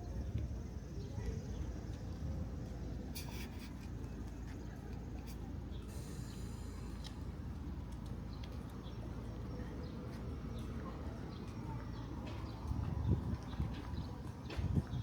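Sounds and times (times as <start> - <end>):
light irregular clicks and taps: 7.8 - 8.9.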